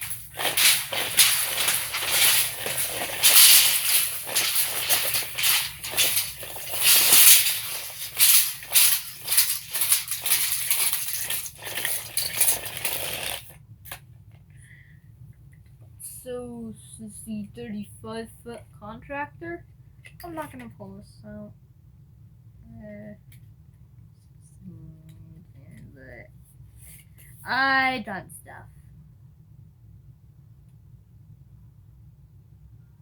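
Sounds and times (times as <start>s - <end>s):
tape measures clattering and clicking: 0.0s - 13.6s.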